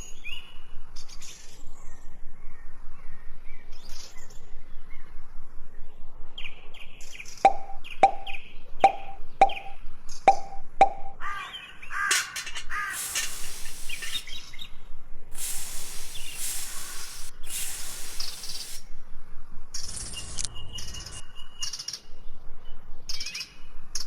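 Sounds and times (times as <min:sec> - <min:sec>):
hissy noise: 0:12.1 - 0:14.4, 0:15.3 - 0:18.9.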